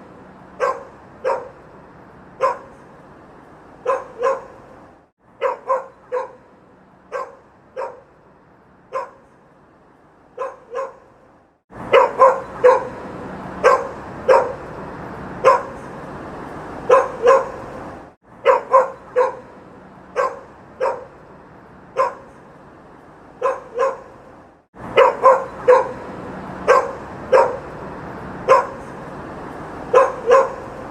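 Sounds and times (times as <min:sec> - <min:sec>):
city street ambience: 0:00.0 - 0:30.9
dog barking: 0:00.6 - 0:01.6, 0:02.4 - 0:02.9, 0:03.8 - 0:04.6, 0:05.4 - 0:06.4, 0:07.1 - 0:08.1, 0:08.9 - 0:09.4, 0:10.4 - 0:11.1, 0:11.9 - 0:14.7, 0:15.4 - 0:15.9, 0:16.8 - 0:17.7, 0:18.4 - 0:21.2, 0:21.9 - 0:22.4, 0:23.4 - 0:24.2, 0:24.9 - 0:27.7, 0:28.4 - 0:29.0, 0:29.9 - 0:30.9.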